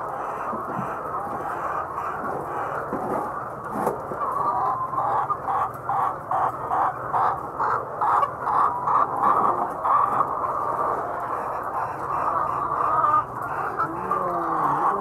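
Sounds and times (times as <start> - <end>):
chicken clucking rapidly: 0.0 - 15.0
flock of chickens calling: 0.0 - 15.0.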